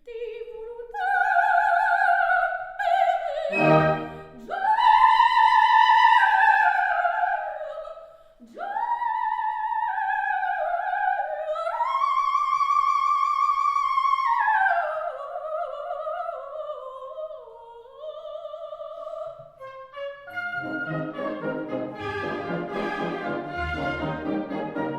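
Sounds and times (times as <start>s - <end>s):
operatic singing with vibrato: 0.1s - 24.9s
musical accompaniment: 3.5s - 4.4s, 19.6s - 24.9s.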